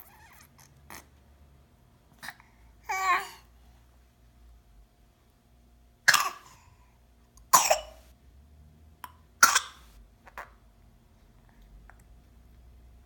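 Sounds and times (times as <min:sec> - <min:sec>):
baby coughing: 0:06.1 - 0:06.6, 0:07.5 - 0:08.0, 0:09.1 - 0:10.5.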